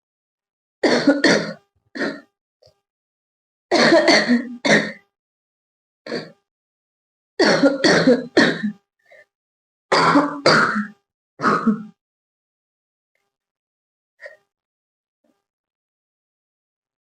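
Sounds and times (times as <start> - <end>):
girl coughing: 0.8 - 2.3, 3.7 - 5.0, 6.1 - 6.3, 7.4 - 8.8, 9.9 - 11.9.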